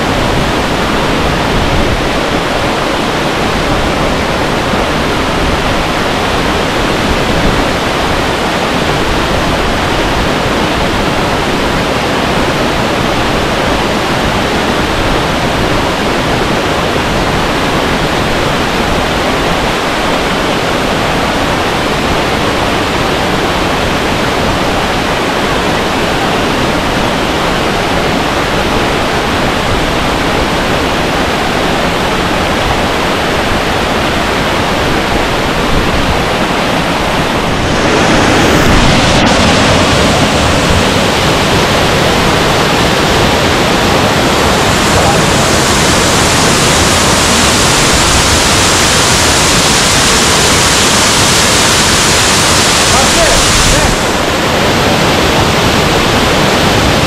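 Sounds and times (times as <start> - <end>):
waterfall roaring: 0.0 - 57.0.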